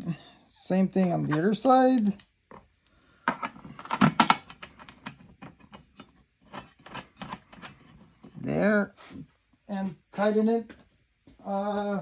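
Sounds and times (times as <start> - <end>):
metal hardware clicking and rattling: 1.5 - 2.4, 3.3 - 7.7.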